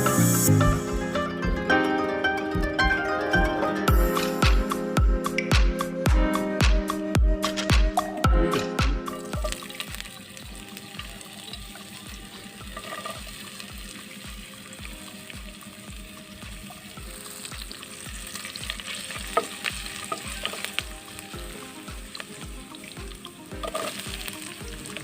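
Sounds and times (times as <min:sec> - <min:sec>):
background music with beat: 0:00.0 - 0:25.0
food sizzling in oil: 0:08.5 - 0:25.0.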